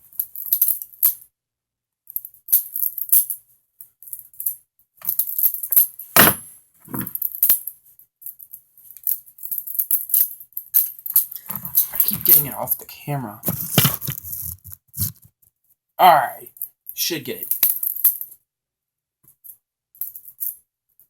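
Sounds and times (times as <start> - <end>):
louder knock: 6.2 - 6.4.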